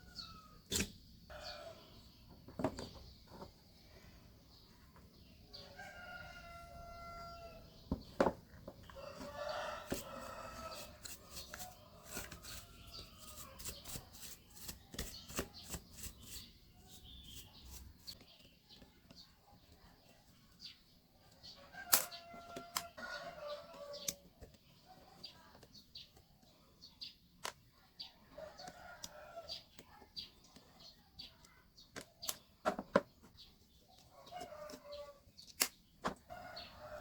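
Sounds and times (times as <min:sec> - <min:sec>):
rooster crowing: 0:05.7 - 0:07.6, 0:09.0 - 0:11.0.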